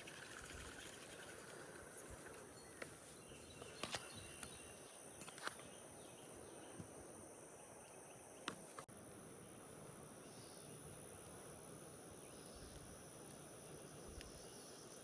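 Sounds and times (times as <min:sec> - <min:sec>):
light hiss: 0:06.7 - 0:15.0.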